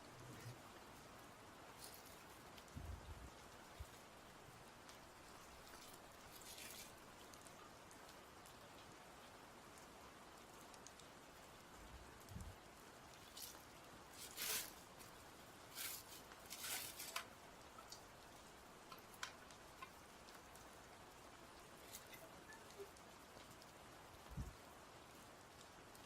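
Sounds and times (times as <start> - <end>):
plastic and cardboard crinkling: 1.8 - 2.4, 5.4 - 7.0, 13.2 - 18.0, 21.7 - 22.9
small ticks: 10.6 - 11.2, 15.0 - 20.7, 21.6 - 23.7.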